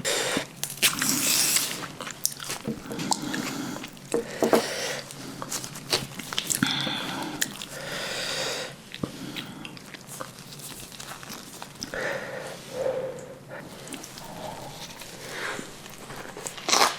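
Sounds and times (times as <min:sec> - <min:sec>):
wet chewing: 0:00.2 - 0:16.9
crunchy bites: 0:13.7 - 0:16.9.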